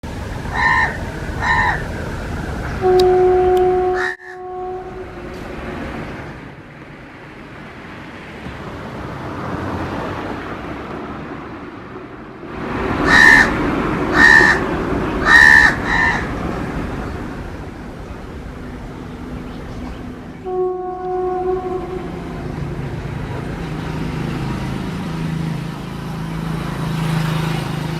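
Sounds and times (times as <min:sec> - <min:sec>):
crow cawing: 0:00.5 - 0:01.9, 0:13.0 - 0:16.4.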